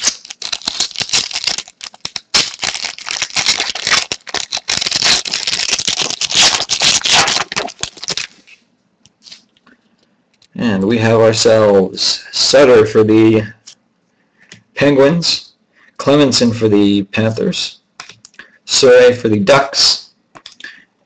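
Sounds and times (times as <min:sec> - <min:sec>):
trading cards rustling and crinkling: 0:00.0 - 0:09.6.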